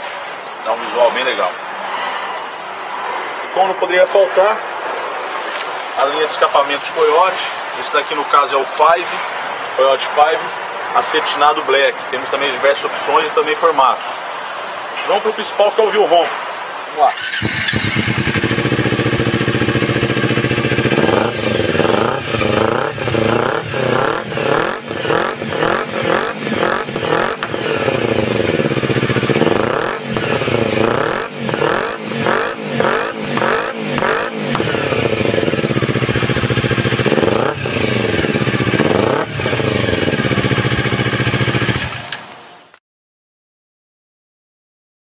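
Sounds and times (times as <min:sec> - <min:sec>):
motorcycle engine revving: 0:17.1 - 0:42.1.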